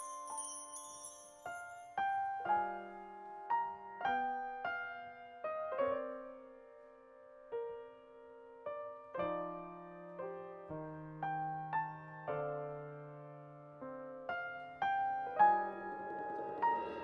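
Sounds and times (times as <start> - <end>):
slow soft piano: 0.0 - 17.0.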